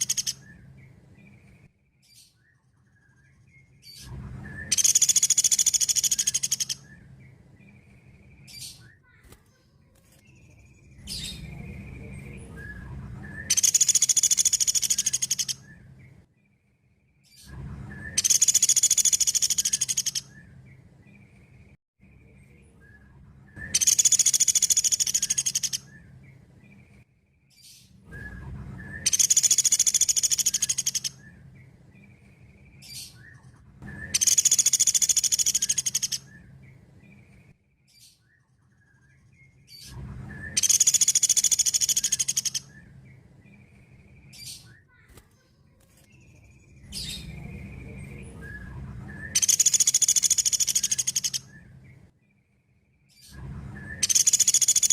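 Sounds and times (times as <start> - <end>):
bird high-pitched trills: 0.0 - 0.6, 4.6 - 7.1, 13.4 - 15.8, 18.0 - 20.4, 23.6 - 26.1, 28.8 - 31.4, 32.9 - 36.5, 40.5 - 42.9, 46.2 - 51.7, 53.8 - 54.9.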